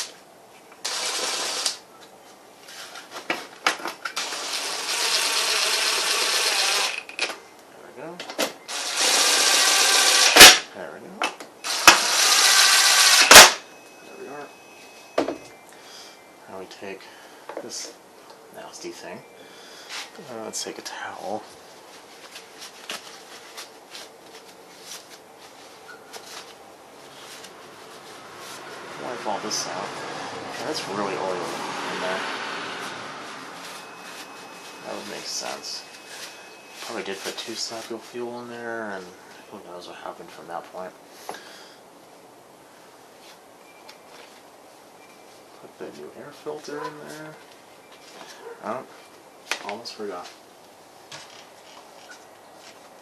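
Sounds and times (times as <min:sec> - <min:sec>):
towel rustling and scraping: 0:21.4 - 0:29.4, 0:32.6 - 0:38.4.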